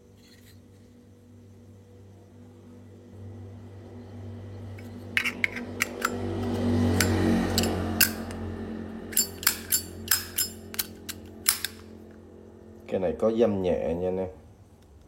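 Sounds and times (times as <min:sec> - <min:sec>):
low hum: 0:00.0 - 0:13.1.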